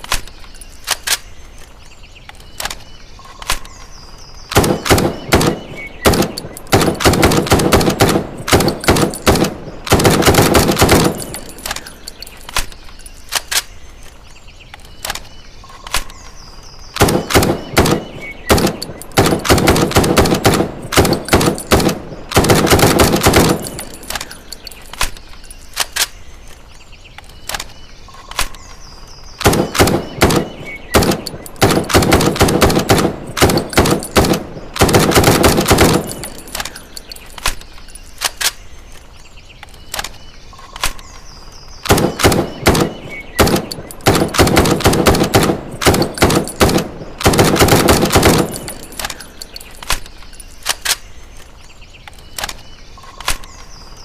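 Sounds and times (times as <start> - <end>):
rifle firing automatic bursts: 4.6 - 11.7, 17.0 - 24.2, 29.4 - 36.7, 41.9 - 49.2.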